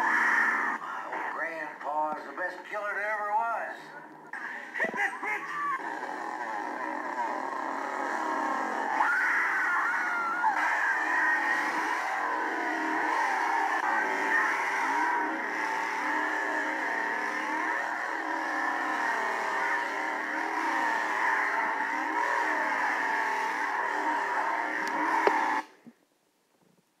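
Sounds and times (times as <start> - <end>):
chainsaw engine revving: 5.8 - 25.8.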